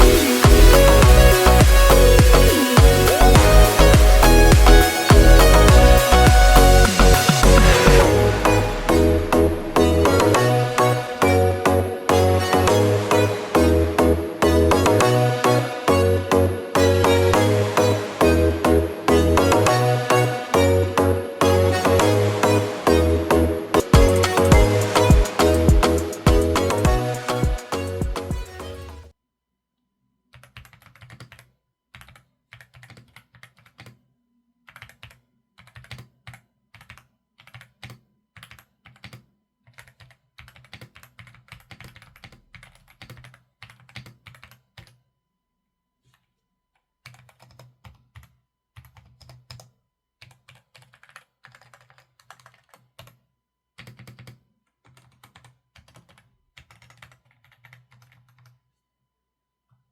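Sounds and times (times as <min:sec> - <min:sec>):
mechanical keyboard typing: 0:30.3 - 0:34.0, 0:34.7 - 0:45.0, 0:47.0 - 0:53.2, 0:53.8 - 0:58.6.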